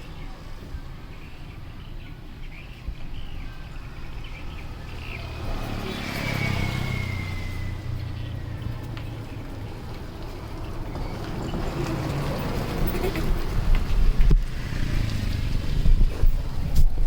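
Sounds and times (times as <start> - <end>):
vehicle engine rumble: 0.0 - 17.0.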